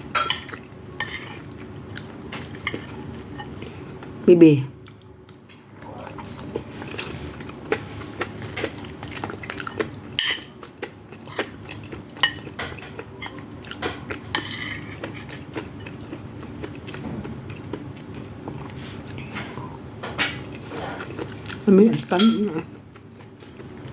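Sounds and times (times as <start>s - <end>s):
cutlery clinking on a plate: 0.2s - 1.4s, 10.2s - 10.6s, 12.2s - 15.9s, 22.1s - 22.5s.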